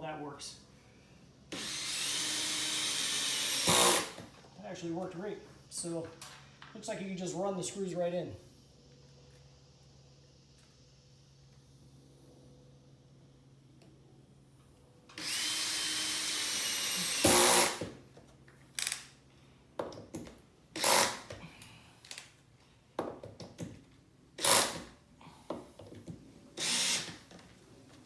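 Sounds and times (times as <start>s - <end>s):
cordless drill driving screw: 1.5s - 4.2s, 15.1s - 17.9s, 18.8s - 19.0s, 20.8s - 21.3s, 24.4s - 24.9s, 26.6s - 27.3s.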